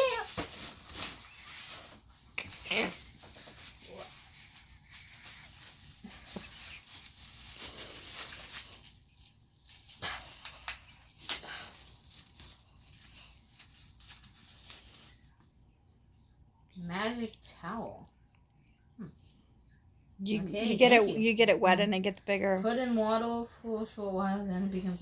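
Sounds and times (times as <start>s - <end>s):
packaging crinkling and tearing: 0.0s - 15.5s.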